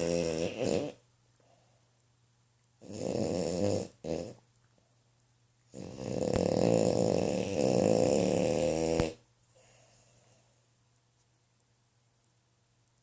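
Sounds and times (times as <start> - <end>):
snoring: 0.0 - 1.0, 2.8 - 4.4, 5.7 - 9.2.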